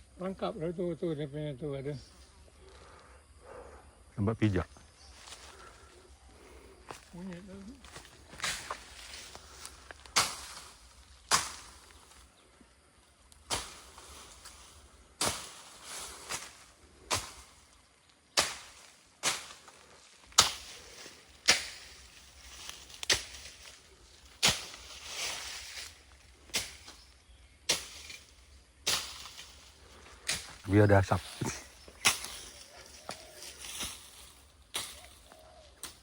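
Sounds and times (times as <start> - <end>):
cracking hits in dry undergrowth: 7.8 - 12.3, 13.2 - 36.0.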